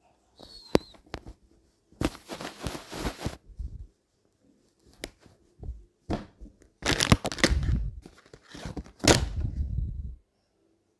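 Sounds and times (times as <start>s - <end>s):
packaging rustling and crinkling: 2.0s - 3.4s, 6.8s - 9.4s.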